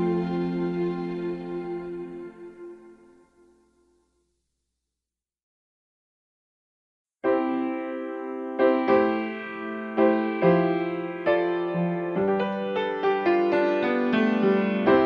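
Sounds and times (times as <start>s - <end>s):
electric piano chords: 0.0s - 3.1s, 7.2s - 15.0s.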